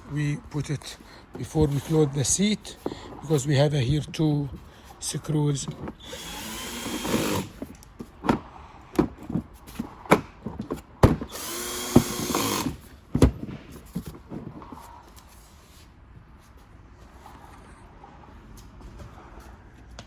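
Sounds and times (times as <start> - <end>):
power drill driving a screw: 6.0 - 7.6, 11.3 - 12.8.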